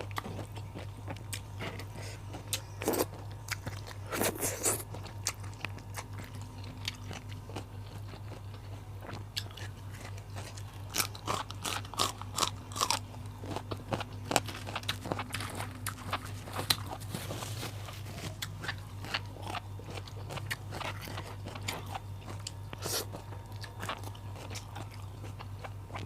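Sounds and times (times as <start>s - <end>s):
chewing raw vegetables: 0.0s - 26.0s.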